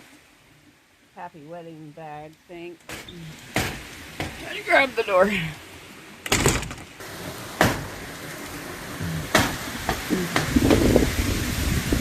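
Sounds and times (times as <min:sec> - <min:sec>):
rain falling: 0:00.0 - 0:12.0
handling knocks and clicks: 0:06.2 - 0:07.0.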